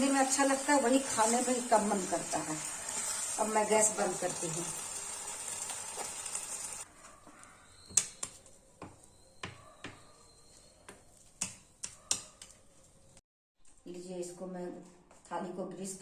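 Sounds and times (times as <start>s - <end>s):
sizzling hiss from hot pan: 0.0s - 6.8s.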